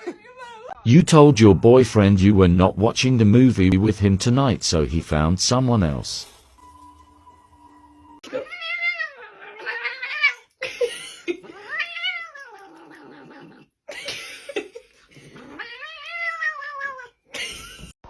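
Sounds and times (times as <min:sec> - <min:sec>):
cat yowling: 0:08.3 - 0:10.5, 0:11.4 - 0:13.6, 0:15.4 - 0:17.2.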